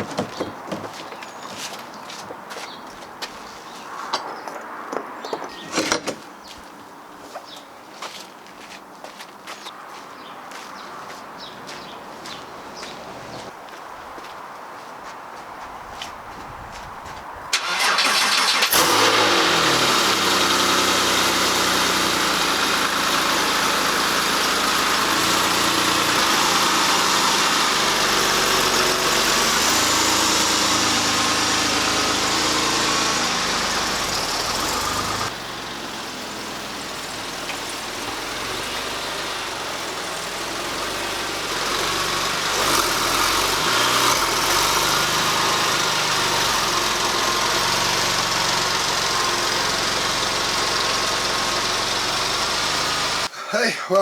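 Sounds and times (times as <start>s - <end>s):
car engine cranking and running: 0.0s - 1.2s, 17.5s - 53.3s.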